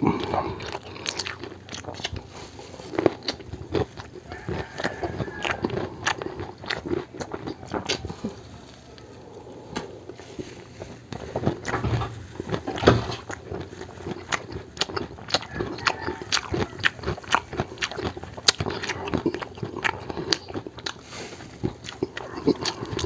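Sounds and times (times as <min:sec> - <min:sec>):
person chewing food: 0:00.0 - 0:23.0.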